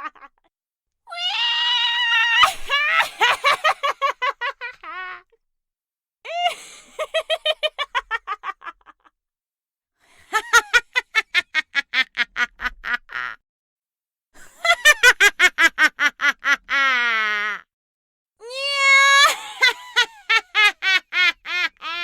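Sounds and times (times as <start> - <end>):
high-pitched cackling laughter: 2.1 - 5.3, 6.3 - 9.1, 19.0 - 22.0.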